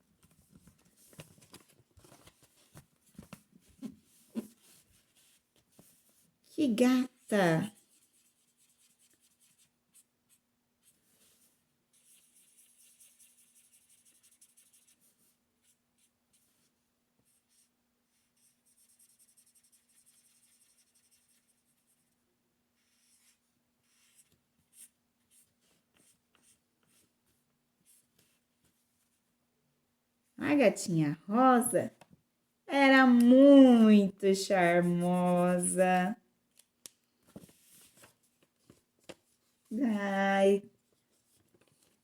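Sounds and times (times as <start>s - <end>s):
pencil scratching on paper: 6.8s - 22.1s, 22.8s - 27.1s, 34.5s - 35.8s.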